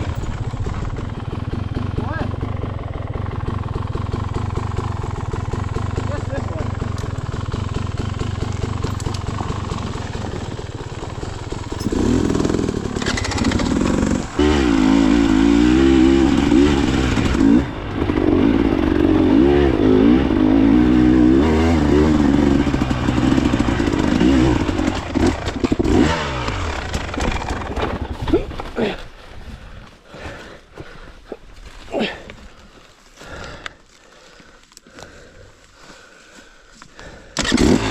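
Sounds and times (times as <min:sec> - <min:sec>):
dirt bike engine revving: 0:00.0 - 0:28.2, 0:37.0 - 0:37.9.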